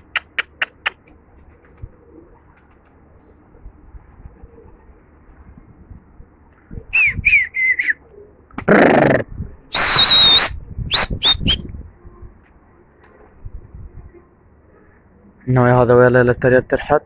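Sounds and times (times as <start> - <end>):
man whistling sharply: 6.9 - 8.0, 9.7 - 11.7.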